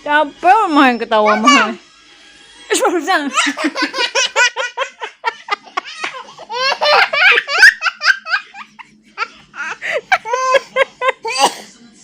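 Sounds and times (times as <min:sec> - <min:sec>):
toddler laughing: 0:01.3 - 0:01.8, 0:03.3 - 0:11.4.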